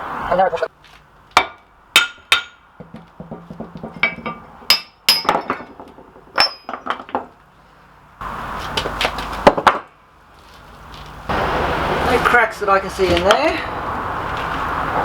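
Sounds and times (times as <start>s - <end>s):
iron parts clinking and knocking: 2.0s - 7.5s
rough rushing noise: 11.2s - 15.0s.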